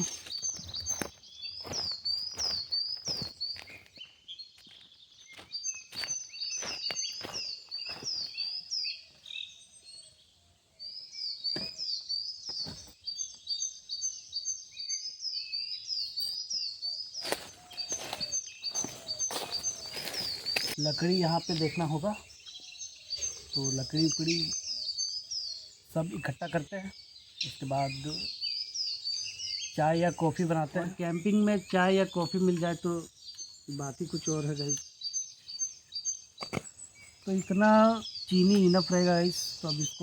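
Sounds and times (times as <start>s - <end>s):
leaves and twigs snapping: 0.0s - 3.9s, 17.2s - 21.7s, 36.4s - 36.7s
bird chirping: 0.0s - 40.0s.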